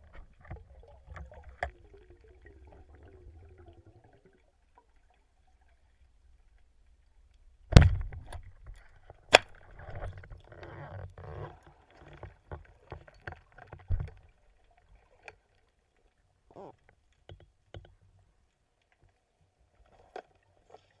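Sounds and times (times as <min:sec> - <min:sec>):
water bubbling: 0:00.0 - 0:06.0
thump: 0:07.7 - 0:08.4.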